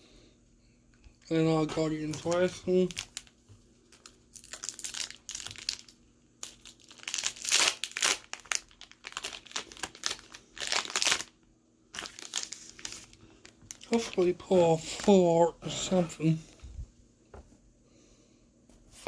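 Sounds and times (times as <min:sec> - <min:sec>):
foil wrapper tearing and crinkling: 0:01.9 - 0:15.1.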